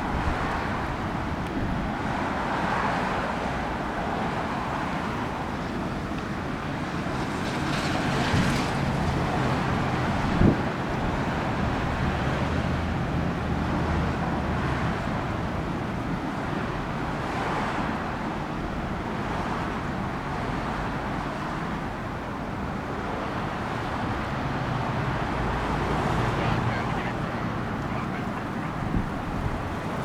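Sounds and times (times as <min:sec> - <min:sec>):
road traffic noise: 0:00.0 - 0:30.0
wind on microphone: 0:26.6 - 0:30.0.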